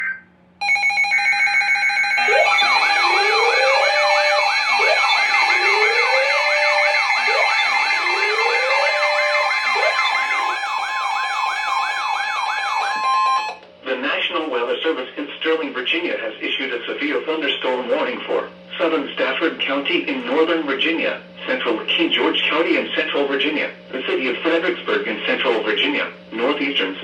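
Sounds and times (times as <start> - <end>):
fast yelping siren: 0.6 - 13.6
steady alarm tones: 0.6 - 13.6
wailing siren: 0.6 - 13.6.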